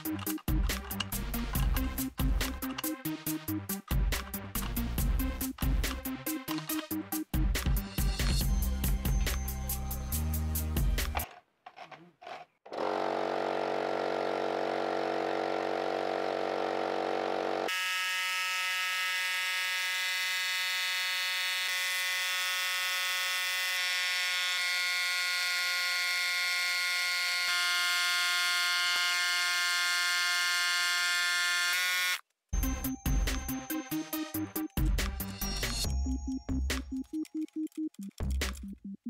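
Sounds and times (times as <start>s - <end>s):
air compressor motor humming: 12.7s - 31.8s.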